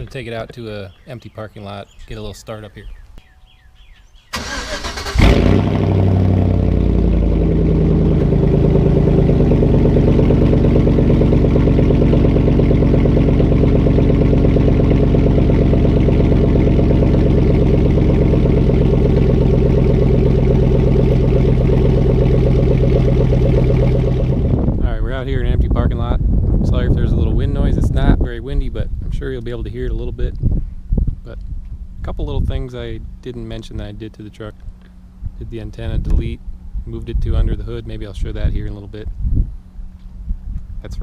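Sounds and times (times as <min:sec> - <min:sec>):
car engine starting and idling: 0:03.5 - 0:25.3
starter motor cranking: 0:04.4 - 0:06.0.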